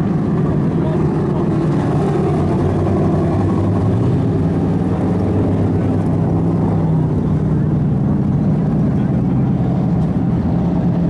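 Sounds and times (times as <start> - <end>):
race car engine droning: 0.0 - 11.0.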